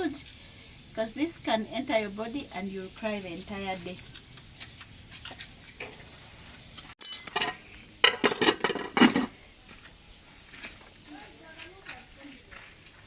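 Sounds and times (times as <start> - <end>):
metal pots and utensils clattering: 7.0 - 9.4.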